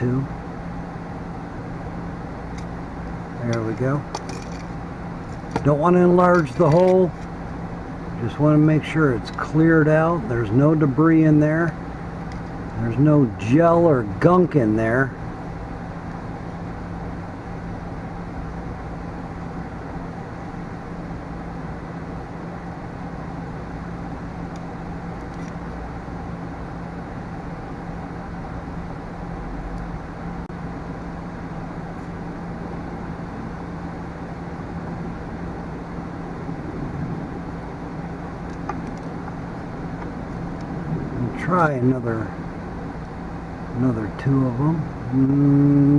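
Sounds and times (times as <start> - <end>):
mechanical hum: 0.0 - 45.9.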